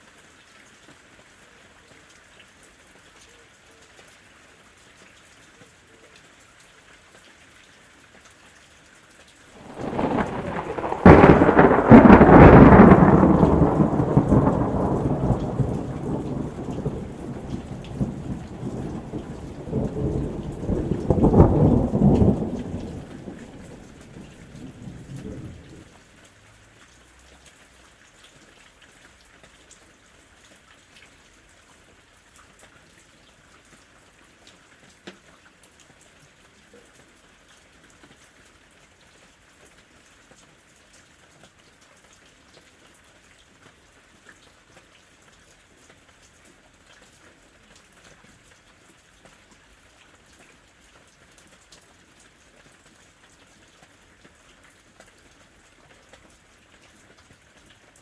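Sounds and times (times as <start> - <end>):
steady rain: 0.0 - 58.0
thunder rumbling and cracking: 9.6 - 26.0.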